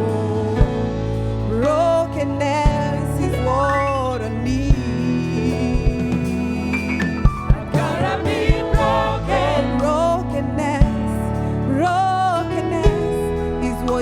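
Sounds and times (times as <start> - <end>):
sustained keyboard chords: 0.0 - 14.0
drum hits: 7.2 - 9.8
singers with choir: 7.5 - 14.0.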